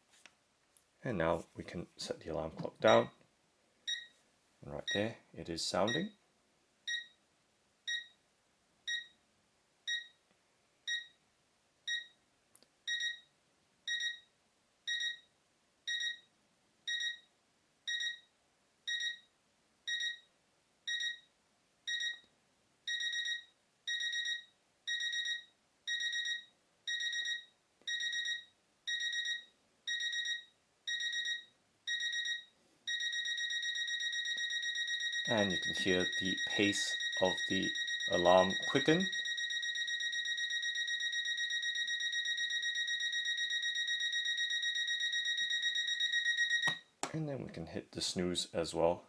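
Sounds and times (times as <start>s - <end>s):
alarm clock beeping: 6.9s - 7.1s, 8.9s - 9.1s, 9.9s - 10.1s, 11.9s - 12.1s, 12.9s - 13.2s, 13.9s - 14.2s, 14.9s - 15.2s, 15.9s - 16.2s, 16.9s - 17.2s, 17.9s - 18.3s, 18.9s - 19.2s, 19.9s - 20.2s, 20.9s - 21.2s, 21.9s - 22.2s, 22.9s - 46.8s.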